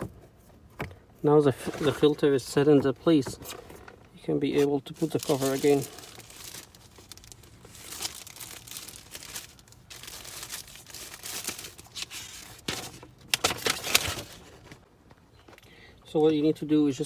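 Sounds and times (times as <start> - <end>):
plastic filter rustling and crinkling: 1.3 - 14.8.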